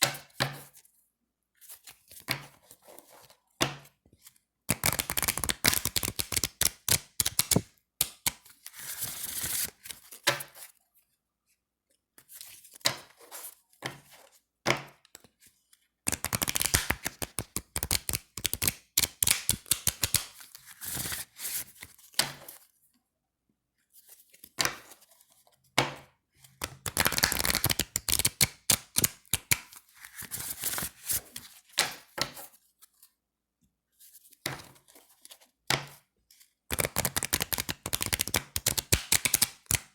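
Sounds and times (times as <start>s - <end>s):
cards sliding rustle: 4.3s - 10.8s, 16.1s - 22.2s, 26.6s - 33.1s, 36.7s - 39.8s
playing cards riffled: 4.7s - 7.6s, 16.1s - 20.3s, 26.8s - 29.6s, 36.7s - 39.9s.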